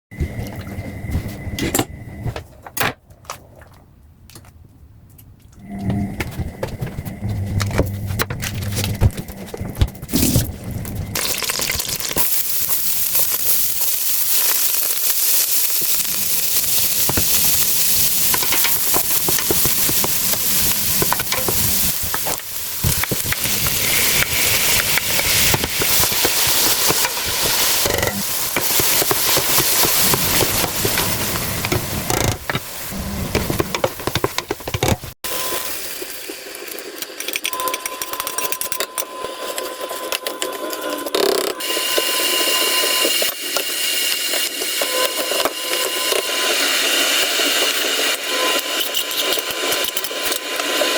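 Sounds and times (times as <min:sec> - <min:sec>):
food sizzling in a pan: 0:11.2 - 0:34.2, 0:35.3 - 0:40.8, 0:41.6 - 0:50.9.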